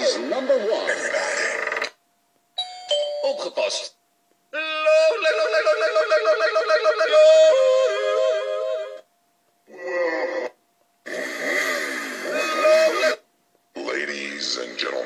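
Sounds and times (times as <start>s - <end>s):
recorded yodelling over sound system: 4.5s - 9.1s, 12.2s - 13.2s.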